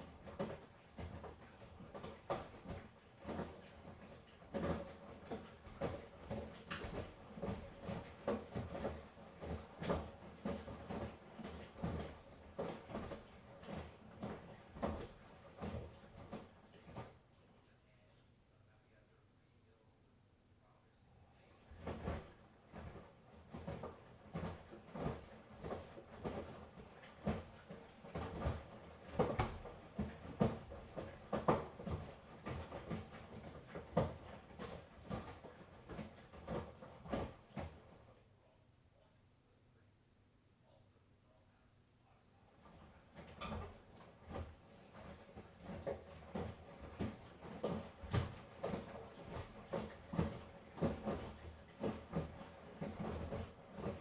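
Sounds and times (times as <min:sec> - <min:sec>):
laundry tumbling in washing machine: 0:00.0 - 0:17.6, 0:21.4 - 0:38.4, 0:42.4 - 0:54.0
washing machine drum turning: 0:42.6 - 0:54.0.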